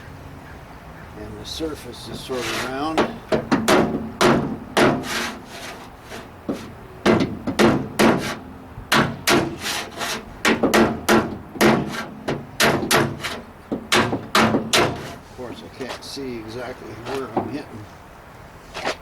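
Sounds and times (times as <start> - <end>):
hammer tapping steel panel: 2.4 - 5.3, 6.5 - 15.2.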